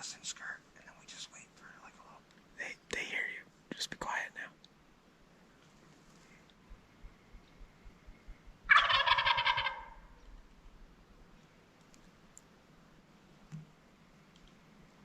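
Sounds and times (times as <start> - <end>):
turkey gobbling: 8.7 - 10.2.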